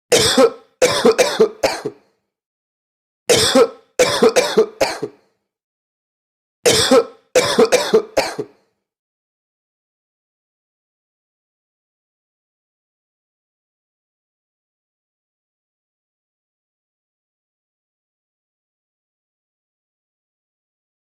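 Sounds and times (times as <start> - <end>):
person coughing harshly: 0.1 - 2.1, 3.3 - 5.3, 6.7 - 8.6.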